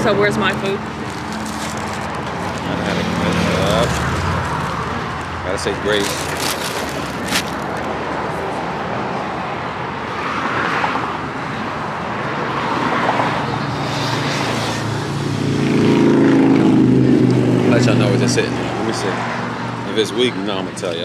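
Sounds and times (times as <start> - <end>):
vehicle engine hum: 0.0 - 10.2
road traffic passing: 0.0 - 21.0.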